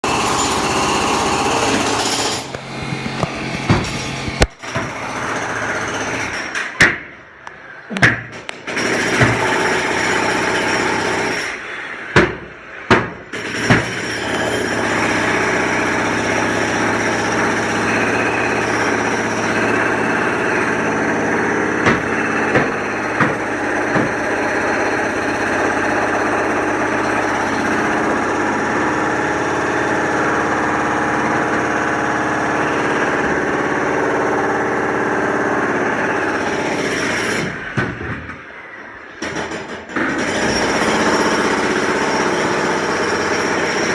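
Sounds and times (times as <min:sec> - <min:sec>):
sharp knocks: 0:02.5 - 0:05.0, 0:07.9 - 0:09.6, 0:12.2 - 0:14.0, 0:21.8 - 0:24.3.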